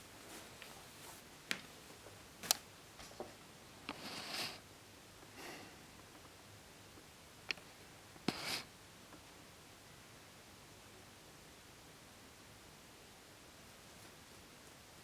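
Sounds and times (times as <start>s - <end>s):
short rustles: 0.0s - 2.6s.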